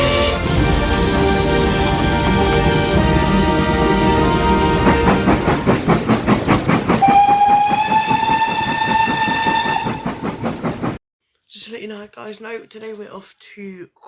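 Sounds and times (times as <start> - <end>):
steam whistle: 0.0 - 5.7, 7.0 - 10.2
steam locomotive chuffing: 0.0 - 11.0.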